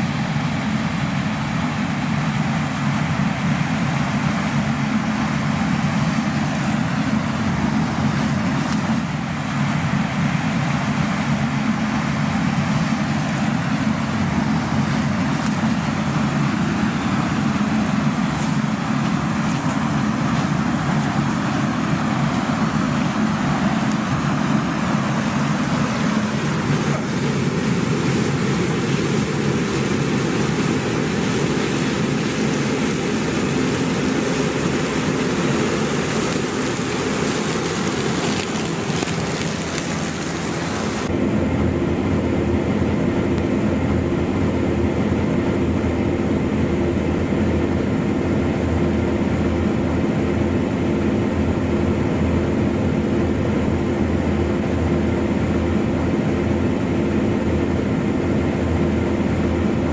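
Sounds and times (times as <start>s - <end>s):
combine harvester drone: 0.0s - 59.9s
low hum with held tones: 0.0s - 59.9s
hiss: 2.9s - 9.3s, 12.3s - 41.1s.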